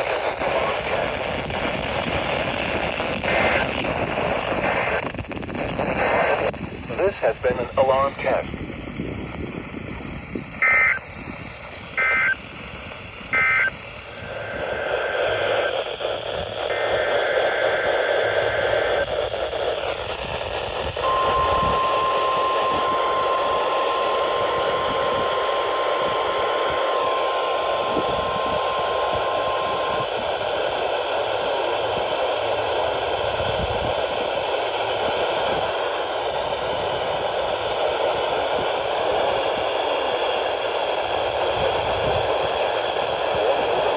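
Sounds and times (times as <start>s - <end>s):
radio static hiss: 0.0s - 8.6s, 10.6s - 11.0s, 11.8s - 12.4s, 13.2s - 43.9s
steady warning alarm tone: 13.4s - 19.7s, 21.0s - 39.4s
digital data tone bursts: 16.7s - 19.0s, 21.0s - 32.7s.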